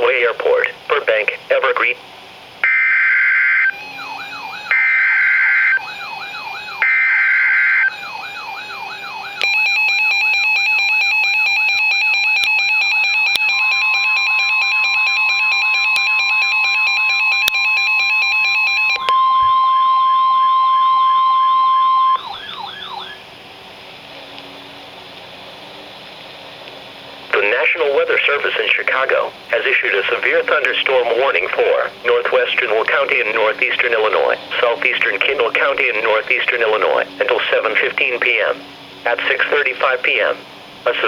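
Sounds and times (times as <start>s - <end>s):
dense electronic alarm tone: 2.6s - 23.2s
steady warning alarm tone: 2.6s - 23.3s
wailing siren tone: 2.6s - 23.3s.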